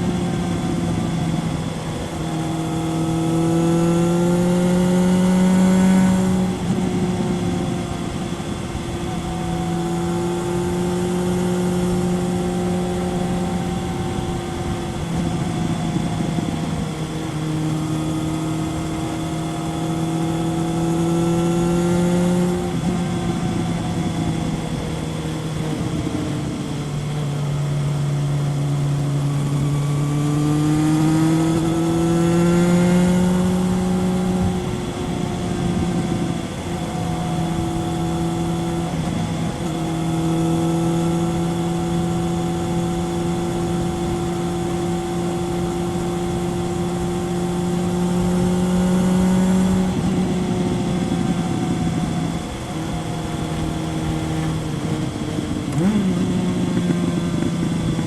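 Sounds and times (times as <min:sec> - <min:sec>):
motorcycle engine revving: 0:00.0 - 0:58.0
wind noise: 0:00.0 - 0:58.0.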